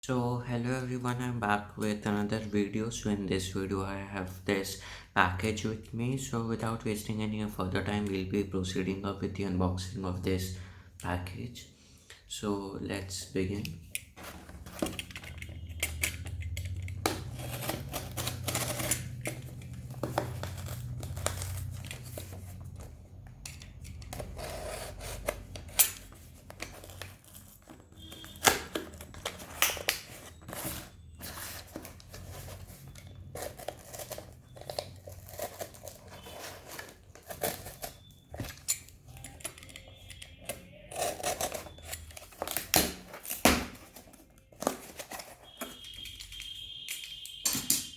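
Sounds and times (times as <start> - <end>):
packaging tearing and crinkling: 14.9 - 22.7, 23.8 - 46.5.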